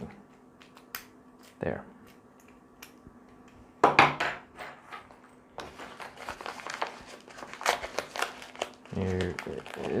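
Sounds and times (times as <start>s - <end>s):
plastic packaging crinkling: 5.6s - 10.0s.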